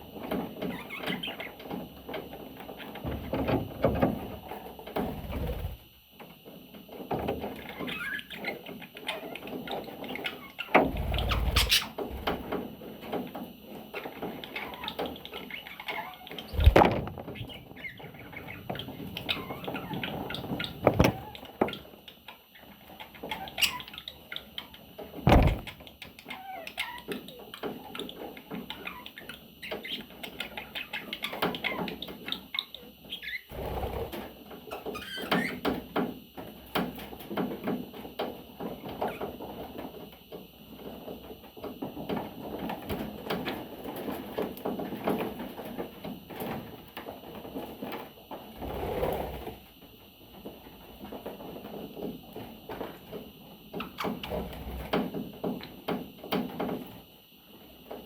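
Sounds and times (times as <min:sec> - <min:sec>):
sharp knocks: 0:25.3 - 0:25.8.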